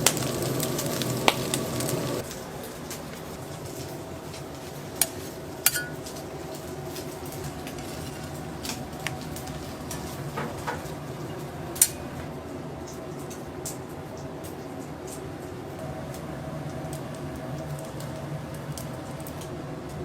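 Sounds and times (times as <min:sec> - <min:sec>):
metal utensils clanking on cookware: 0:05.0 - 0:06.3.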